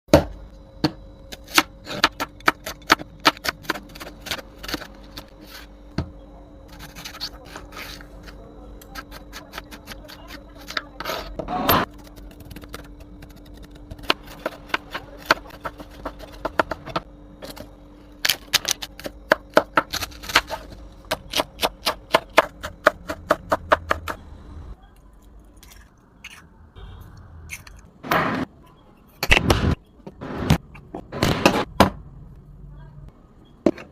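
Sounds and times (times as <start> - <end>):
utensil scrape: 6.7 - 11.9.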